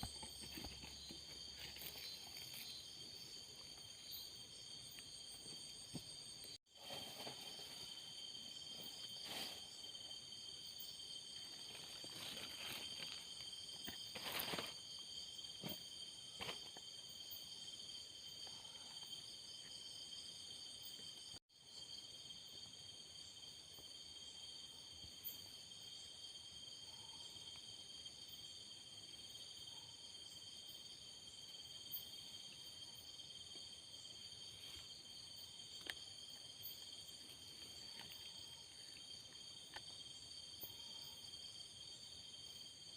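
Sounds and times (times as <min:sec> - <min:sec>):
insects trilling: 0:00.0 - 0:42.9.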